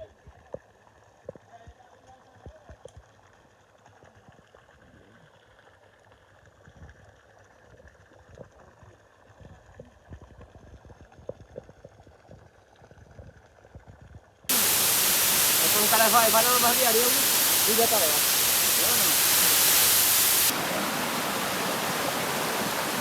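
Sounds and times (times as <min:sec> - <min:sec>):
water trickling and bubbling: 0:14.5 - 0:23.0.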